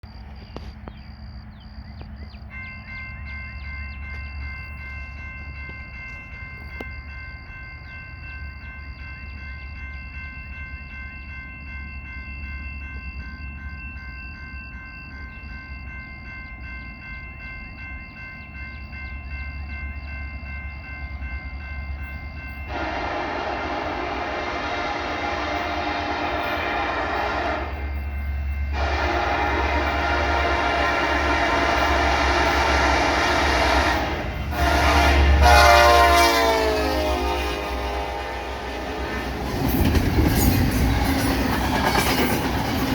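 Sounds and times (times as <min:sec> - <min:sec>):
high ringing tones: 0:01.1 - 0:41.6
locomotive rumble: 0:17.6 - 0:42.9
train rushing past: 0:22.7 - 0:42.9.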